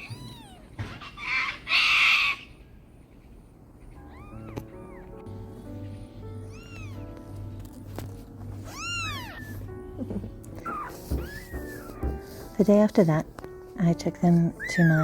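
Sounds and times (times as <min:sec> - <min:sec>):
kittens mewing: 0:00.0 - 0:02.4, 0:03.9 - 0:07.4, 0:08.5 - 0:12.4, 0:14.5 - 0:15.0
background music: 0:04.0 - 0:15.0.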